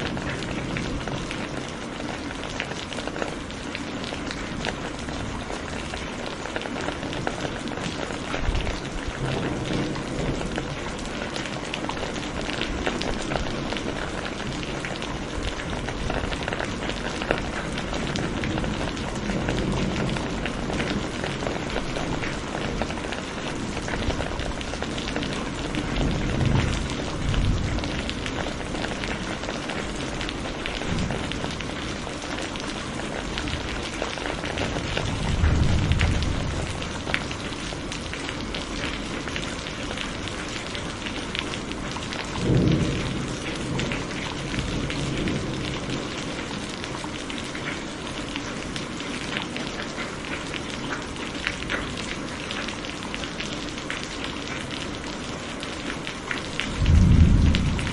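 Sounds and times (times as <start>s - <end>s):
heavy rain pattering: 0.0s - 57.9s
low rumbles: 56.8s - 57.9s.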